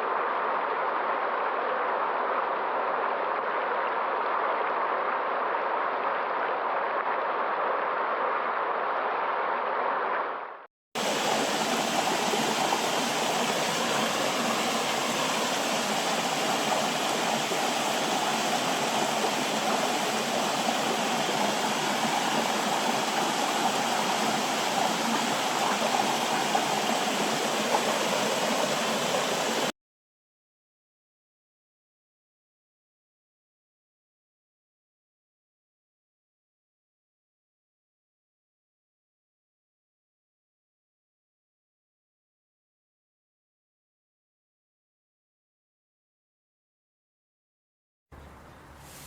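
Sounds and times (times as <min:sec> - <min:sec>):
rushing water: 0:00.0 - 0:08.4, 0:11.0 - 0:29.7, 0:48.8 - 0:49.0
muffled water rush: 0:00.0 - 0:10.0, 0:11.0 - 0:29.7, 0:48.2 - 0:49.0.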